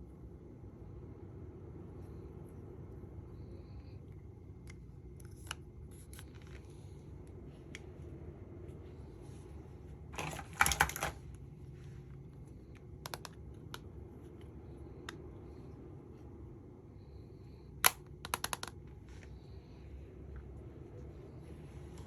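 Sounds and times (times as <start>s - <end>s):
faint steady hum: 0.0s - 22.0s
clicks of makeup cases handled: 10.2s - 11.2s, 17.8s - 18.8s.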